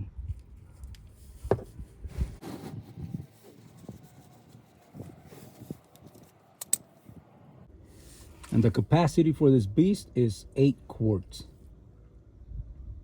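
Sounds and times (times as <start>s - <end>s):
faint low rumble: 7.2s - 13.0s.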